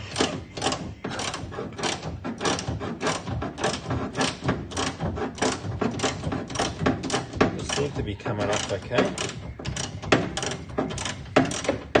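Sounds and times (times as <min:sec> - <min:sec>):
ratchet wrench clicking: 0:08.5 - 0:12.0.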